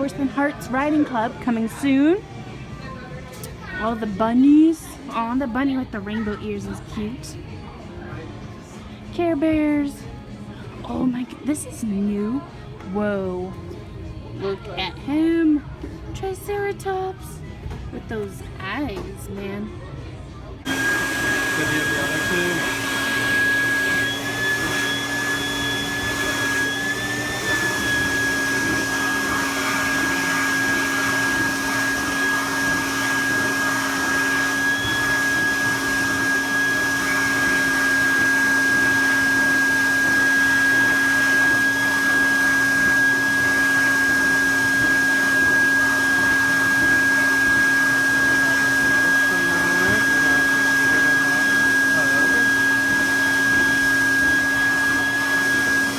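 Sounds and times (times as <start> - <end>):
blower whirring: 20.6 - 55.9.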